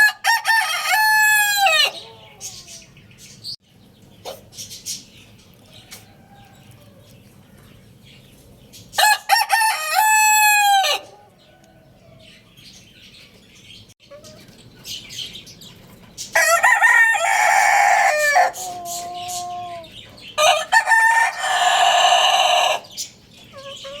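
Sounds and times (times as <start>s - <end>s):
rooster crowing: 0.0s - 2.4s, 5.8s - 7.1s, 9.0s - 12.2s, 16.4s - 22.9s.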